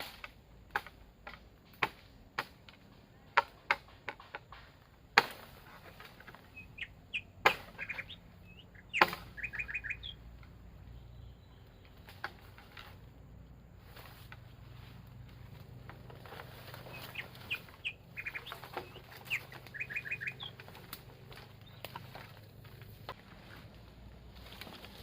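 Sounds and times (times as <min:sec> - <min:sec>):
bamboo being chopped: 0:00.0 - 0:06.5, 0:07.4 - 0:08.0, 0:08.8 - 0:09.6, 0:11.9 - 0:13.0, 0:15.2 - 0:19.7
forest birds chirping: 0:00.0 - 0:25.0.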